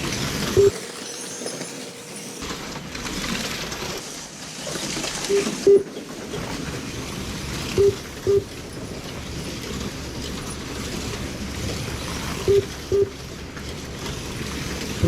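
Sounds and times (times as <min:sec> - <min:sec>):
slot car racing engine effects: 0:00.0 - 0:03.9, 0:12.1 - 0:13.3
short electronic beeps: 0:00.6 - 0:02.4, 0:05.3 - 0:05.9, 0:07.8 - 0:08.5, 0:12.4 - 0:13.2.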